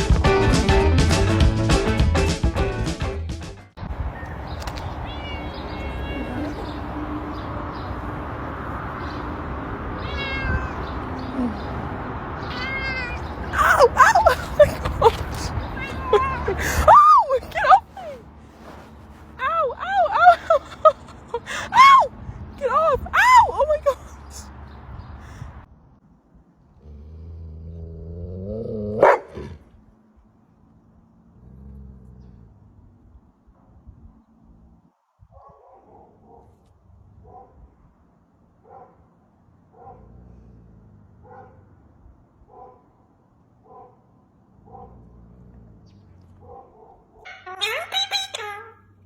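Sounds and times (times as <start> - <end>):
cat meowing: 4.2 - 6.9, 10.0 - 11.6, 12.4 - 18.2
dog growling: 26.7 - 29.7, 31.2 - 32.9, 44.6 - 46.6
dog barking: 29.0 - 29.5, 35.3 - 36.6, 37.2 - 37.7, 38.6 - 40.1, 41.2 - 41.7, 42.5 - 43.0, 43.6 - 45.0, 46.4 - 47.4.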